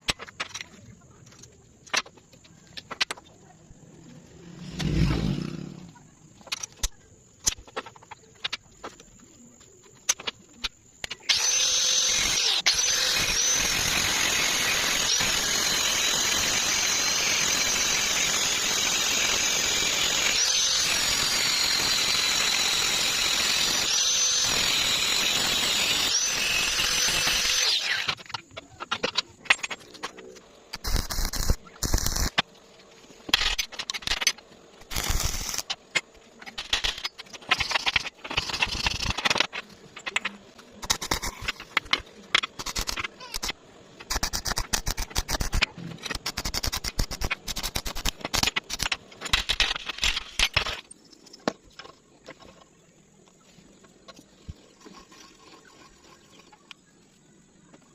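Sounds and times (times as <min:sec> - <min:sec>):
power tool whining: 0:11.3 - 0:28.4.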